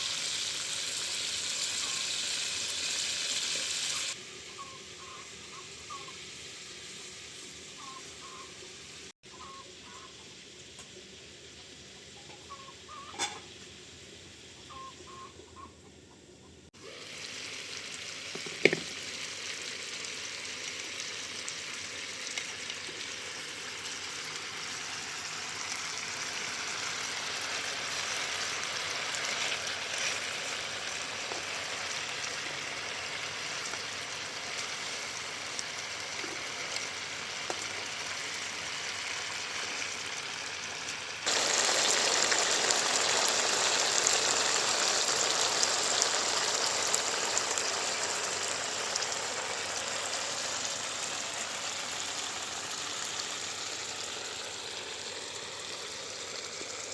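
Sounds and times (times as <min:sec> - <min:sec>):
food sizzling in oil: 0:00.0 - 0:15.3, 0:16.8 - 0:56.9
faint chirps: 0:01.5 - 0:02.7, 0:03.5 - 0:06.2, 0:06.9 - 0:10.3, 0:14.6 - 0:16.6.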